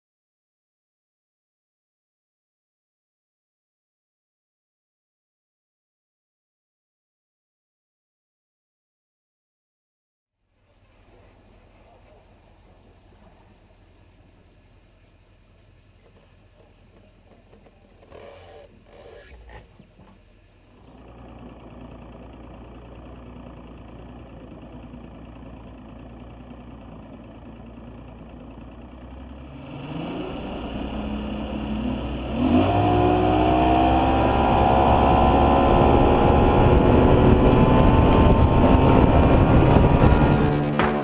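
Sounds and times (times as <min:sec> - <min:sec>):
outboard motor running: 0:10.6 - 0:41.0.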